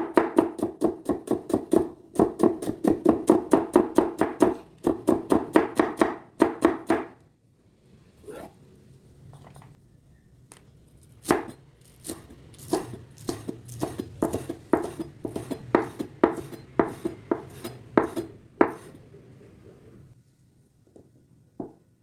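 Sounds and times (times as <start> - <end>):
knife chopping on cutting board: 0.0 - 7.1, 11.2 - 18.9.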